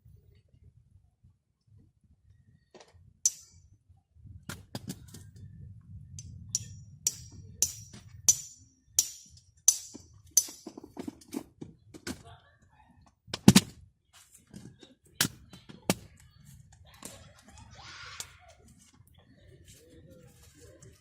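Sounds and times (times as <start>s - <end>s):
low rumble: 4.2s - 8.3s
sharp tapping sounds: 6.2s - 10.8s.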